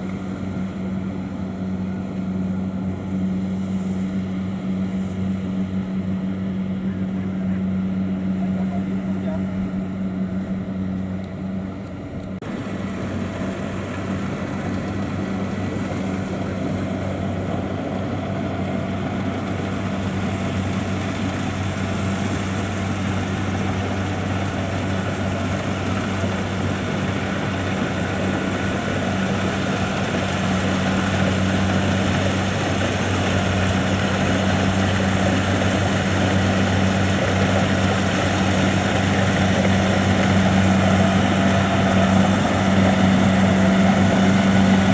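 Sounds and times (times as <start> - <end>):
harvester cutting and threshing clatter: 0.0 - 7.5, 10.2 - 44.9
diesel engine humming: 0.0 - 44.9.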